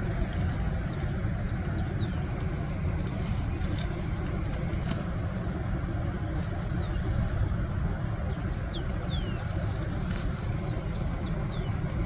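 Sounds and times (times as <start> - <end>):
low outdoor rumble: 0.0 - 12.0
birds whistling: 1.7 - 2.7, 8.2 - 12.0.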